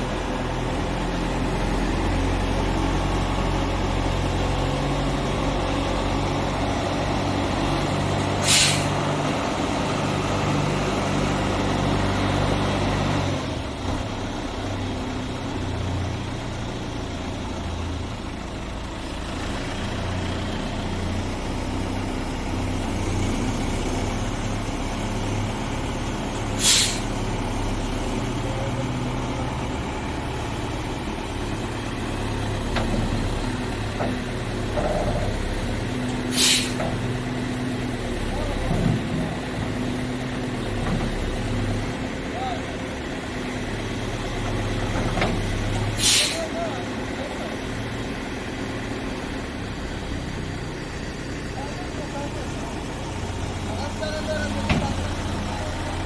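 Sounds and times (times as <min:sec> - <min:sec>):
excavator diesel engine running: 0:00.0 - 0:56.0
short sharp hisses: 0:08.4 - 0:09.0, 0:26.5 - 0:27.2, 0:36.3 - 0:36.8, 0:46.0 - 0:46.5.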